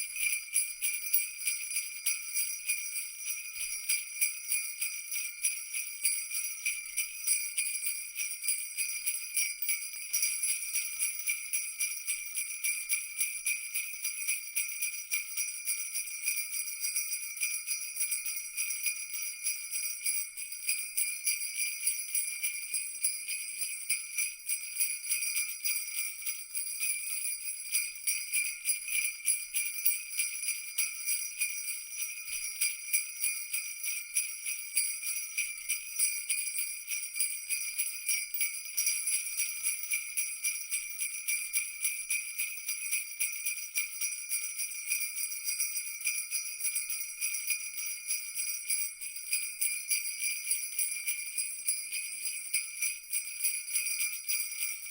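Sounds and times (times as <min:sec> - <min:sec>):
jingle bells shaken: 0:00.0 - 0:54.9.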